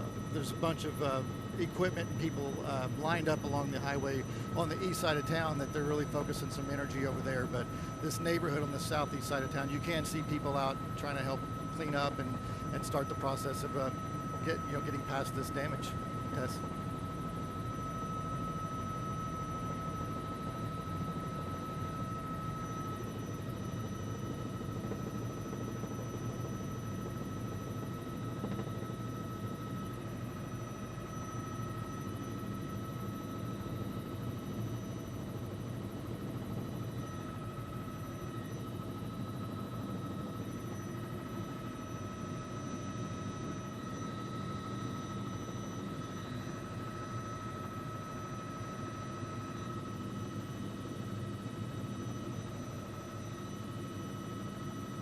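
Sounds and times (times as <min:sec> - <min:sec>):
high whine: 0:00.0 - 0:16.6
helicopter engine and rotors droning: 0:00.0 - 0:55.0.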